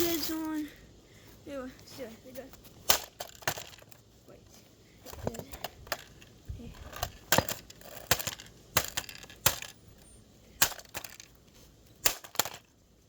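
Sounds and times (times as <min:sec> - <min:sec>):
plastic cube clacking: 0:05.3 - 0:09.8.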